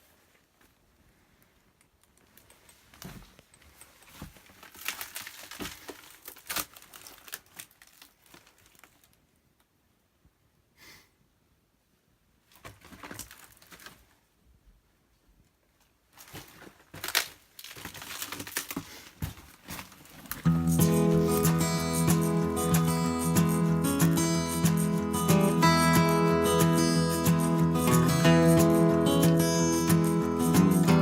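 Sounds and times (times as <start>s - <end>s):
rustling and crinkling: 0.0s - 9.8s, 12.4s - 22.4s.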